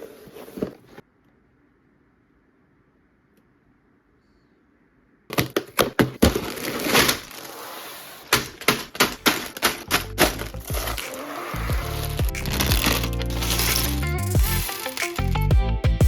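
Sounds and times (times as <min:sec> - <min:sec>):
plastic packaging crinkling: 0:05.3 - 0:15.5
plastic pieces clicking: 0:08.3 - 0:11.3, 0:11.9 - 0:15.4.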